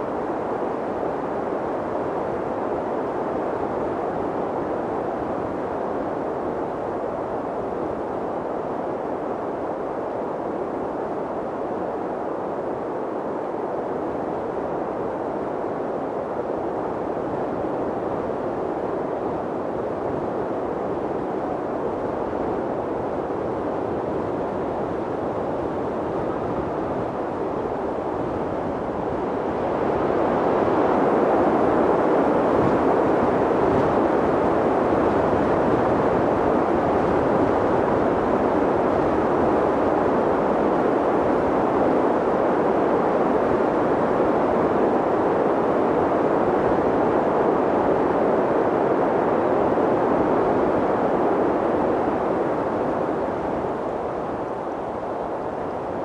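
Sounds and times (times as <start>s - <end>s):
wind blowing: 15.7s - 56.0s.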